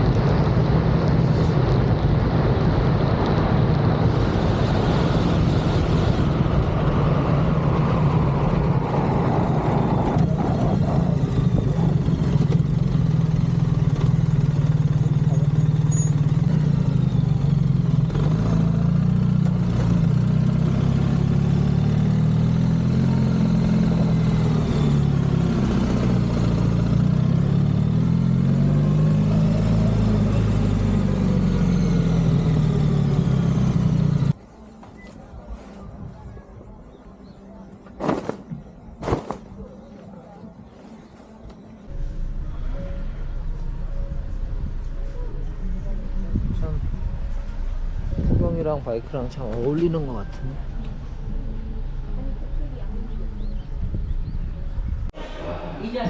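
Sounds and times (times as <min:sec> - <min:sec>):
wind and road noise: 0:00.0 - 0:56.0
motorcycle engine running: 0:04.4 - 0:34.4.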